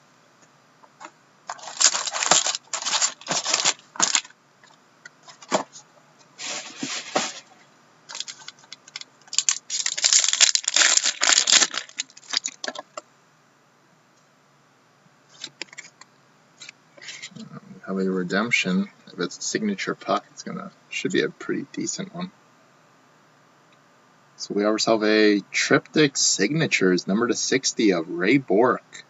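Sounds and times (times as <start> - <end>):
card packs being torn open: 1.5 - 4.3, 8.1 - 12.8
wrapper crinkling: 1.5 - 4.3, 8.1 - 12.8.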